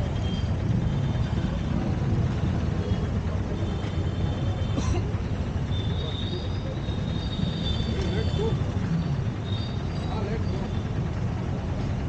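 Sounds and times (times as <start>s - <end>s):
wind and road noise: 0.0s - 5.7s
motorcycle engine rumble: 0.0s - 12.0s.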